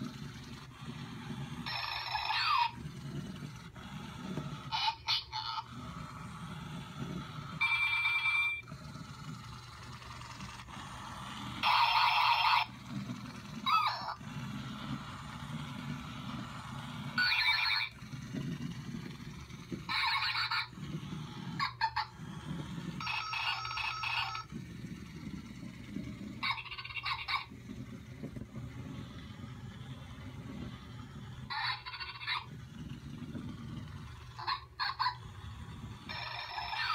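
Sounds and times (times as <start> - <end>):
toy electronic noises: 0.0 - 8.7, 9.3 - 29.2, 29.8 - 36.9.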